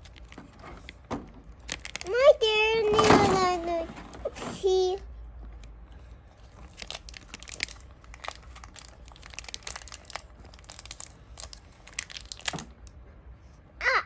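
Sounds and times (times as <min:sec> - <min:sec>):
plastic packaging crinkling: 0:00.0 - 0:03.8, 0:06.4 - 0:12.9.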